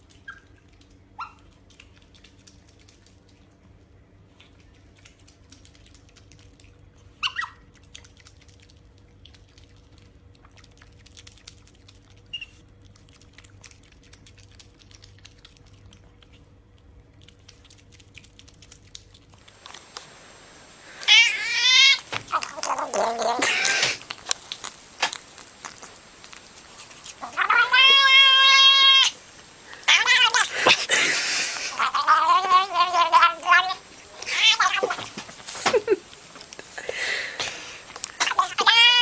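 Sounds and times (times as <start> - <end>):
cat meowing: 21.0 - 24.0, 27.2 - 29.2, 29.8 - 30.8, 31.7 - 35.1, 38.3 - 39.0.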